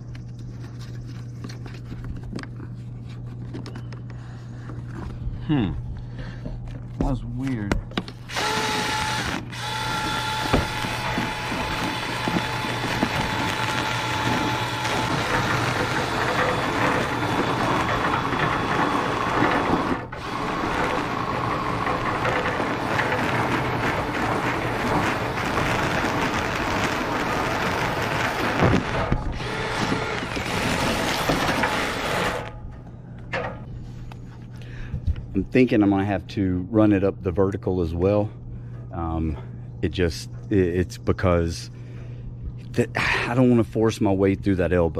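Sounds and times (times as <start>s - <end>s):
motor hum: 0.0s - 35.3s
rotary brush whirring in duct: 8.2s - 33.0s.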